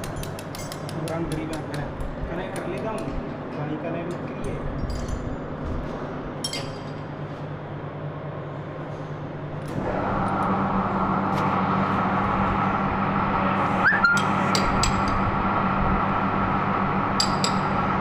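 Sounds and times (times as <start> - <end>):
steady whine: 7.5 - 18.0
lathe humming: 9.7 - 18.0.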